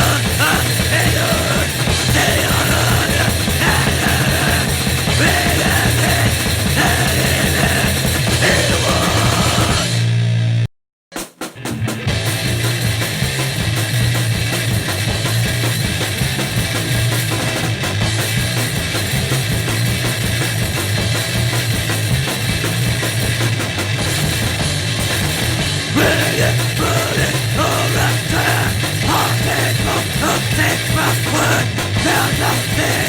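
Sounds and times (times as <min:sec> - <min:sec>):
distorted noise music: 0:00.0 - 0:10.6, 0:25.5 - 0:33.0
drums: 0:00.0 - 0:33.0.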